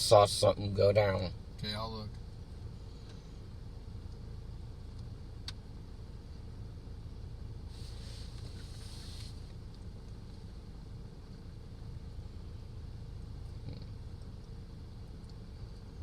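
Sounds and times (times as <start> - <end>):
vehicle rumble: 0.0 - 16.0
brief hiss: 7.7 - 9.6.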